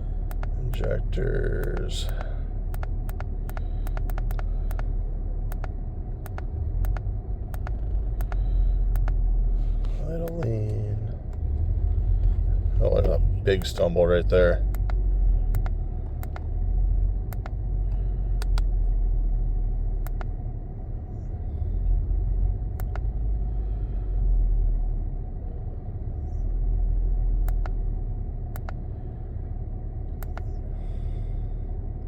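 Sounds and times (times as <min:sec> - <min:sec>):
car engine idling roughly: 0:00.0 - 0:24.3, 0:28.0 - 0:32.0
sharp clicks: 0:00.2 - 0:16.5, 0:17.2 - 0:18.8, 0:20.0 - 0:20.4, 0:22.6 - 0:23.2, 0:27.4 - 0:27.8, 0:28.6 - 0:28.8, 0:30.2 - 0:30.6.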